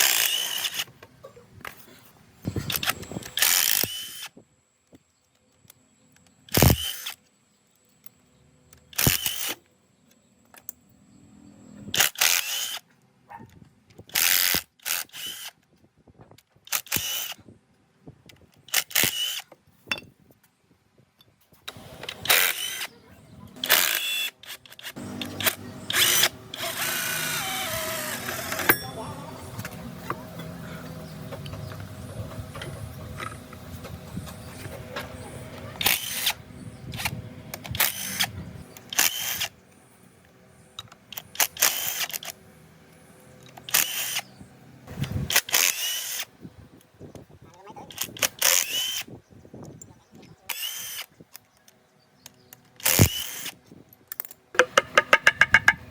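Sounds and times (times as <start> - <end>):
power tool running in bursts: 25.0 - 29.6.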